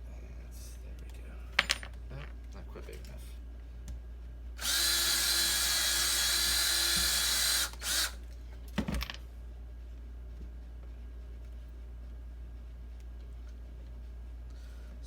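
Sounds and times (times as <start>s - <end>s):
power drill drilling wood: 4.6s - 8.2s.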